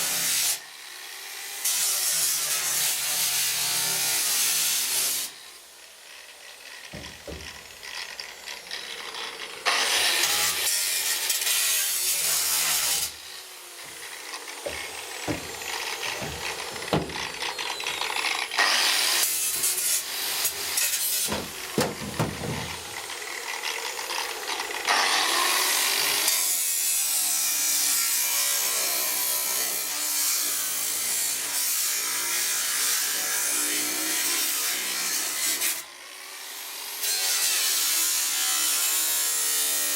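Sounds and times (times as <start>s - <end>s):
angle grinder cutting sheet metal: 0.0s - 39.9s
metal clanks: 14.6s - 17.8s, 20.4s - 23.0s.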